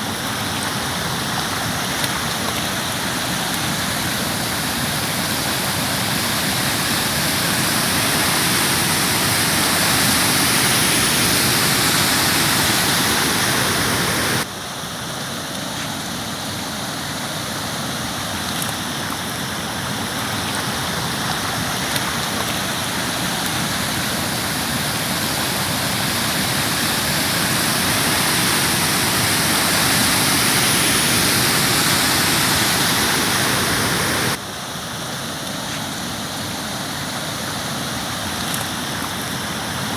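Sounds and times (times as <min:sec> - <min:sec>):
floodwater flowing: 0:00.0 - 0:39.9
heavy rain: 0:00.0 - 0:39.9.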